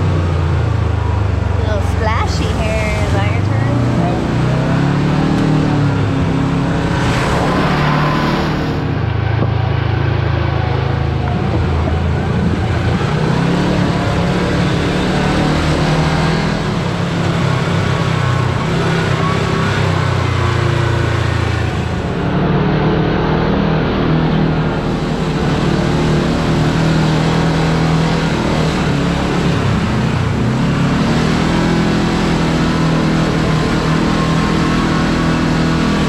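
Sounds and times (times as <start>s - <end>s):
off-road vehicle engine running: 0.0s - 36.0s
tire and trail noise: 0.0s - 36.0s.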